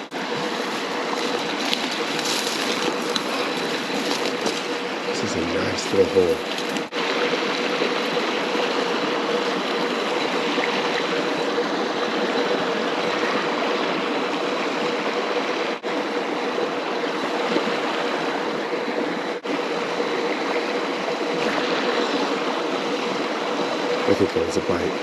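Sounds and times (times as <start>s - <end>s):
creek water running over rocks: 0.0s - 8.7s.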